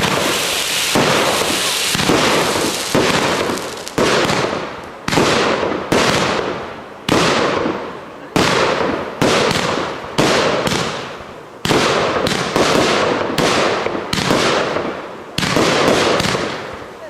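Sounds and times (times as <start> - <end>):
firework shells bursting: 0.0 - 6.3
hiss after firework bangs: 0.0 - 17.0.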